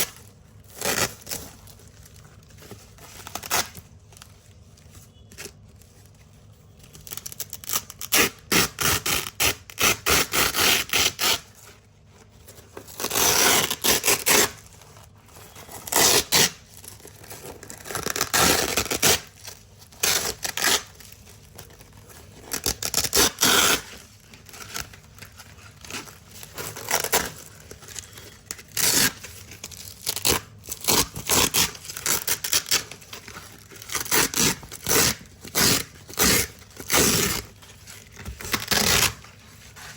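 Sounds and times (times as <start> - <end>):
velcro strips ripping: 6.9 - 11.5, 12.9 - 14.7, 15.9 - 16.6, 17.4 - 21.0, 22.5 - 25.9, 26.6 - 39.3.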